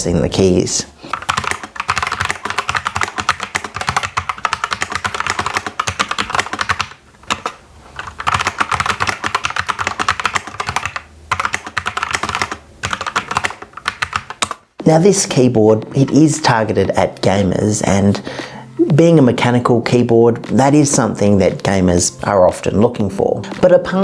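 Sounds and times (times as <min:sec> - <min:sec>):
fast typing on mechanical keyboard: 0:01.1 - 0:14.6.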